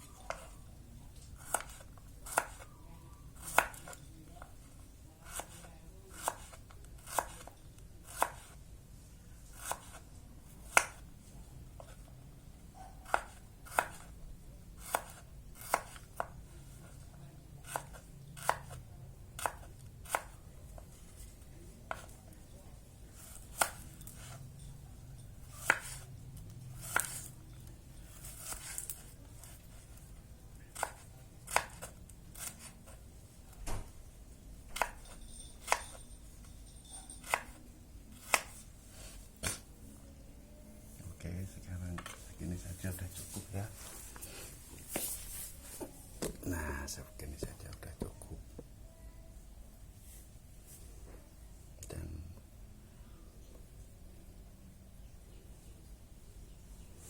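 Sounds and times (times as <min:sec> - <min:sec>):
knife slicing shallots: 0:01.3 - 0:02.7, 0:03.3 - 0:04.0, 0:05.2 - 0:08.6, 0:09.5 - 0:11.0, 0:13.0 - 0:14.2, 0:14.8 - 0:16.4, 0:17.6 - 0:20.4, 0:23.2 - 0:24.4, 0:25.5 - 0:26.1, 0:26.8 - 0:27.4, 0:28.0 - 0:30.0, 0:30.6 - 0:33.0, 0:34.7 - 0:36.0, 0:37.2 - 0:39.7.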